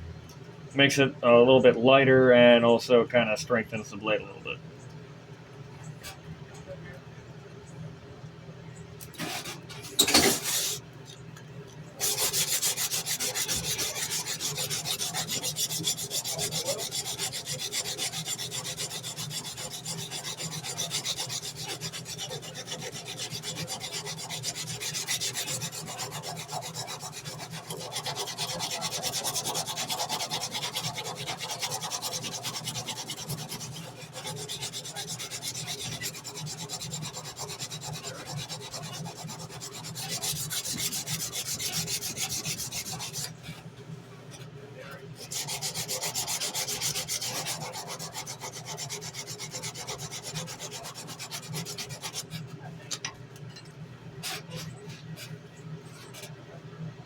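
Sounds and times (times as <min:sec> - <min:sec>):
sandpaper rubbing on steel blade: 0:09.2 - 0:10.8, 0:12.0 - 0:43.4, 0:45.2 - 0:52.4.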